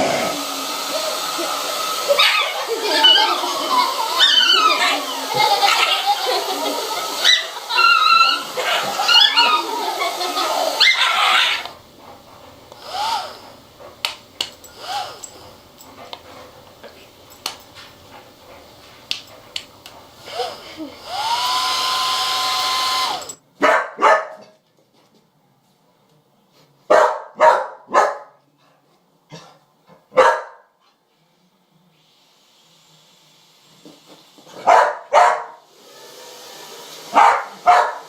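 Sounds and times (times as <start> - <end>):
hair dryer blowing: 0.0 - 23.4, 32.2 - 34.6, 35.6 - 38.0
dog whimpering: 2.1 - 11.8
small clicks: 12.7 - 18.2, 19.0 - 20.1
dog barking sharply: 23.6 - 24.5, 26.9 - 28.3, 30.1 - 30.6, 34.6 - 35.6, 37.1 - 38.0.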